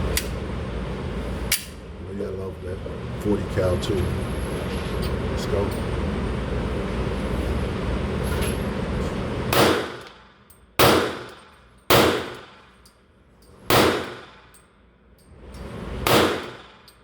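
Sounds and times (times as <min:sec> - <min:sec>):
steady background noise: 0:00.0 - 0:17.0
pistol shots with ringing echo: 0:09.5 - 0:10.2, 0:10.8 - 0:12.7, 0:13.7 - 0:14.5, 0:16.1 - 0:16.8.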